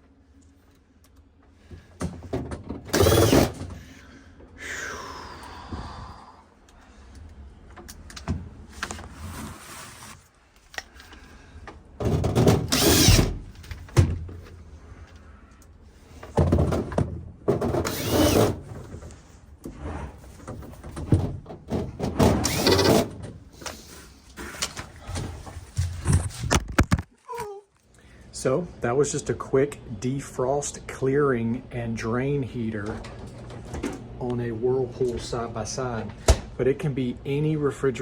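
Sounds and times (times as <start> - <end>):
power drill running: 2.9 - 3.6, 12.7 - 13.4, 17.9 - 18.6, 22.4 - 23.1
knocks and handling noise: 23.6 - 27.2.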